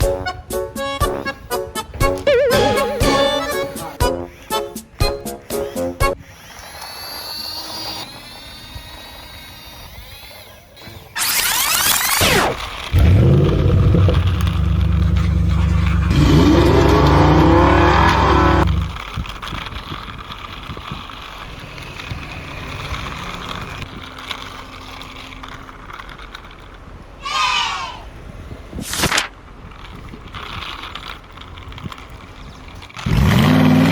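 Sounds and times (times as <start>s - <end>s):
toy vehicle engine revving: 0.0s - 33.9s
wavering whistle-like glide: 5.6s - 12.5s
quiet rattling: 10.9s - 27.2s.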